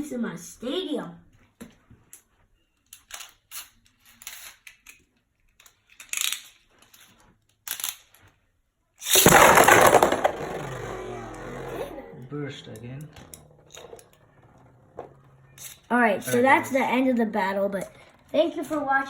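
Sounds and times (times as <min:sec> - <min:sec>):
spinning tops clashing in stadium: 0:09.0 - 0:12.0.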